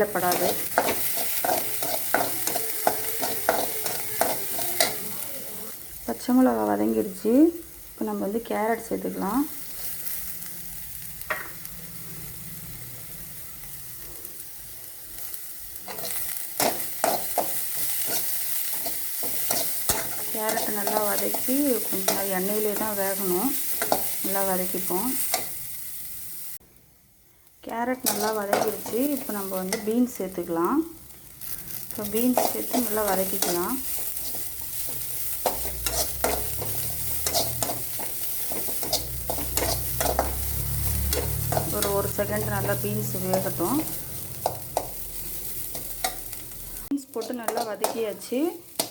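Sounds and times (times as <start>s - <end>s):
spoon scraping pan: 0.0s - 5.2s, 15.9s - 25.6s, 28.0s - 30.0s, 31.5s - 46.4s, 47.2s - 48.9s
vegetables sizzling in oil: 0.0s - 48.9s.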